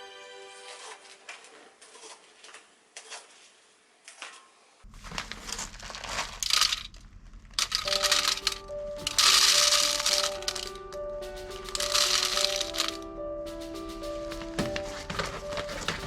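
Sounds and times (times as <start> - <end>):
crinkling and rustling: 0.7 - 10.9, 11.5 - 13.0, 14.2 - 16.0
music notes: 7.9 - 16.0.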